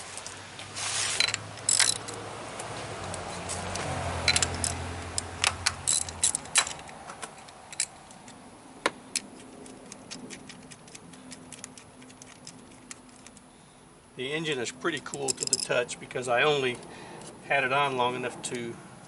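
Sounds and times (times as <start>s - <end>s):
socket ratchet clicking: 1.6s - 2.2s, 3.0s - 8.4s.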